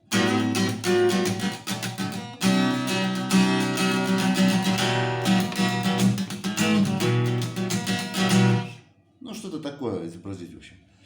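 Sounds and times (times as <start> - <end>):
acoustic guitar strumming: 0.0 - 8.8.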